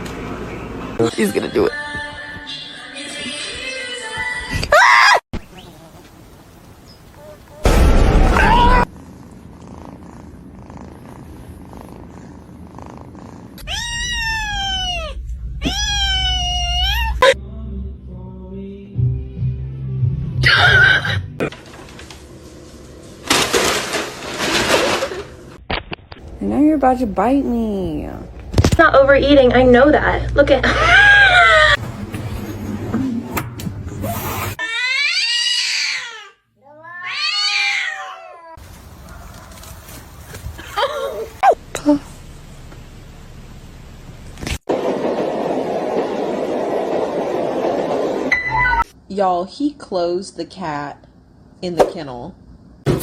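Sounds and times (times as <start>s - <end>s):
cat purring: 8.8s - 13.6s
cat meowing: 13.6s - 17.2s, 34.6s - 38.6s.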